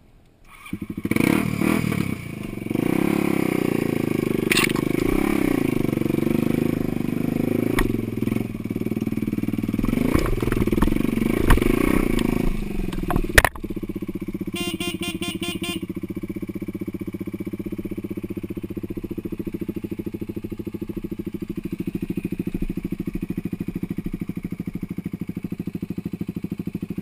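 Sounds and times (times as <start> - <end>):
vehicle engine idling: 2.1 - 27.0.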